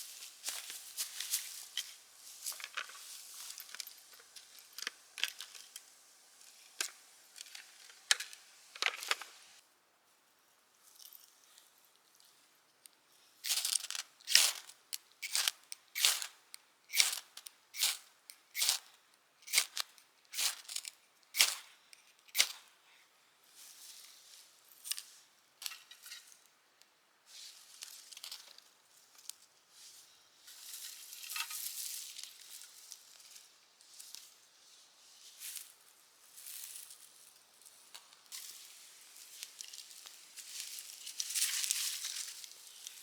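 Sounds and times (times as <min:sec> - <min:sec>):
soft rustling: 0:00.0 - 0:04.7.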